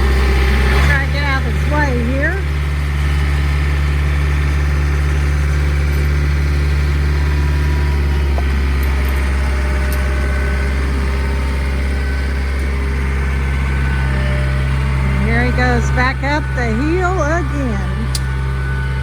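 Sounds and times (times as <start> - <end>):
tractor engine running: 0.0 - 19.0.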